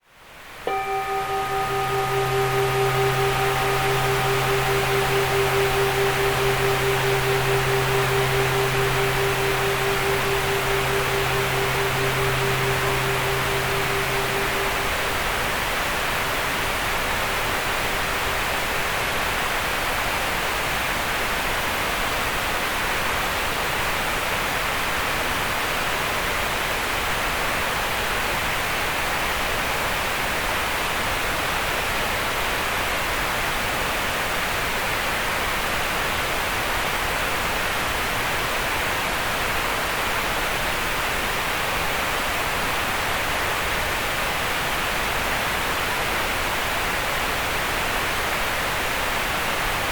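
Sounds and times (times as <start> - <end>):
steady green noise hiss: 0.1 - 49.9
faint held tone: 0.7 - 16.6.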